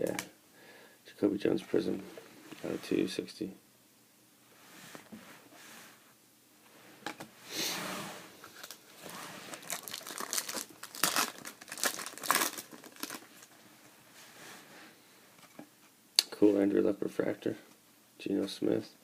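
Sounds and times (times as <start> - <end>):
foil wrapper tearing and crinkling: 9.5 - 13.5.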